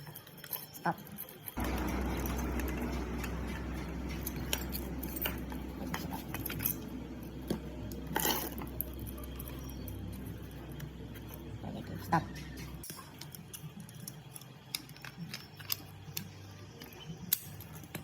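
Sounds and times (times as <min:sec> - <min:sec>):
electric grinder running: 0:01.6 - 0:07.2.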